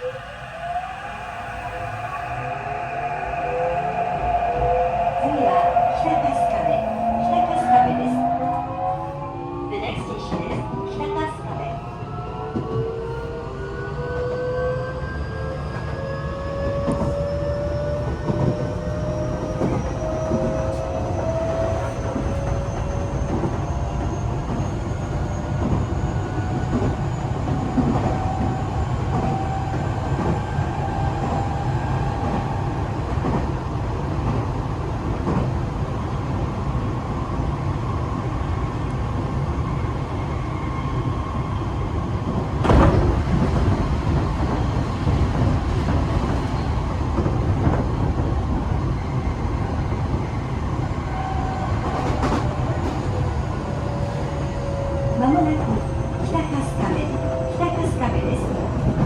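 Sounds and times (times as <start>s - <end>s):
wheels rumbling on rail: 1.6s - 59.0s
rail joint clicks: 16.6s - 24.8s, 42.3s - 48.8s, 51.6s - 54.9s.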